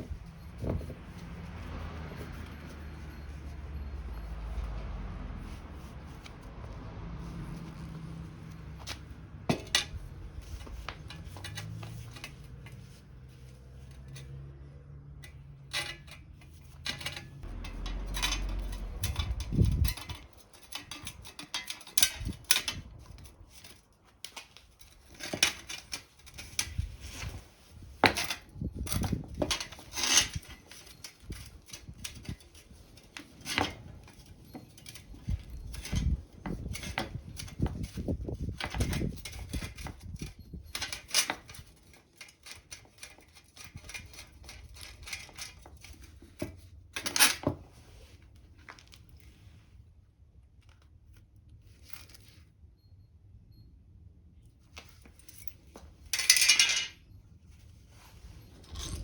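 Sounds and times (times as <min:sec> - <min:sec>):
metal hand tools clinking: 0:08.8 - 0:14.4, 0:15.2 - 0:47.5, 0:55.2 - 0:57.0.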